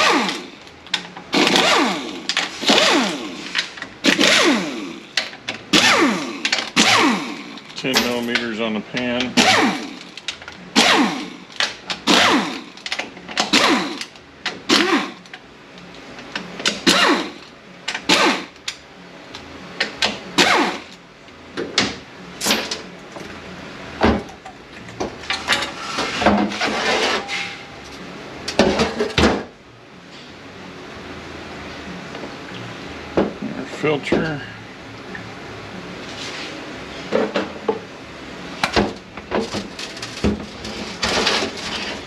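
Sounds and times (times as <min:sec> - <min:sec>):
metallic clatter of hand tools: 0:07.6 - 0:10.6.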